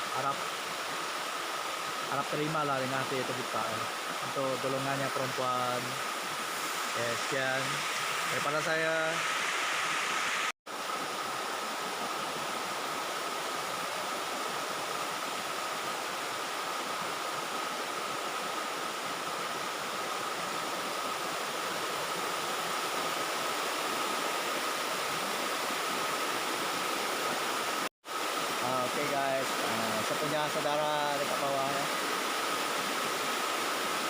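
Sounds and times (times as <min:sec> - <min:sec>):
waterfall roaring: 0:12.7 - 0:34.0.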